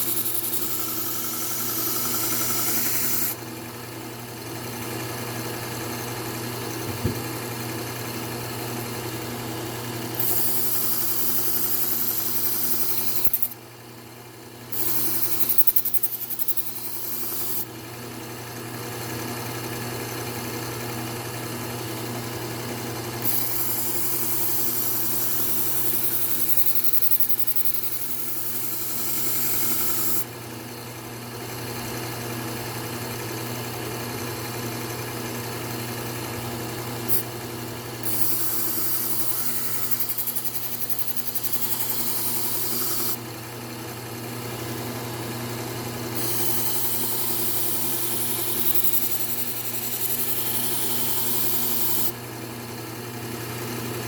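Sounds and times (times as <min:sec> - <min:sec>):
belt knife sharpener motor hum: 0:00.0 - 0:03.4, 0:10.1 - 0:13.6, 0:14.7 - 0:17.7, 0:23.2 - 0:30.3, 0:36.2 - 0:43.3, 0:44.7 - 0:52.2
blade grinding on abrasive belt: 0:00.0 - 0:03.4, 0:10.2 - 0:13.6, 0:38.0 - 0:43.2, 0:46.2 - 0:52.1.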